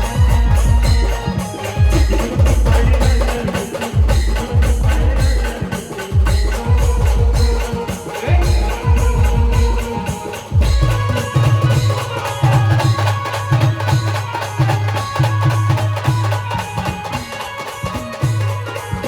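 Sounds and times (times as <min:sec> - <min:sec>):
brass band playing: 0:00.0 - 0:03.2
busy drumming: 0:00.0 - 0:19.0.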